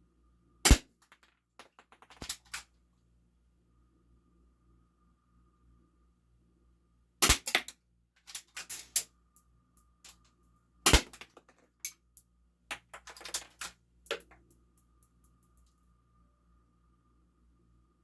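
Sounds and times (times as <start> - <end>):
airsoft pistol shots: 0.7 - 0.9, 7.2 - 7.7, 10.9 - 11.4.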